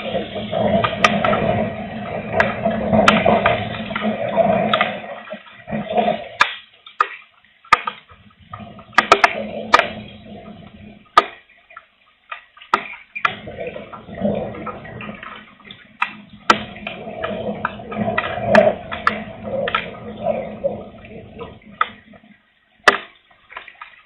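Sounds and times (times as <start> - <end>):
gusting wind on microphone: 0.0 - 6.2
raindrops tapping: 0.0 - 24.0.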